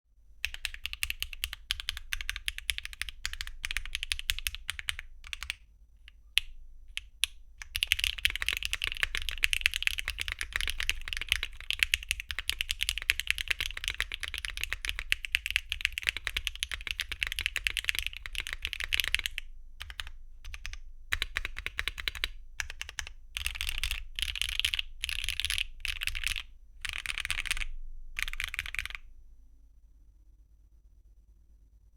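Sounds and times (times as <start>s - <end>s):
mechanical keyboard typing: 0.4s - 29.0s.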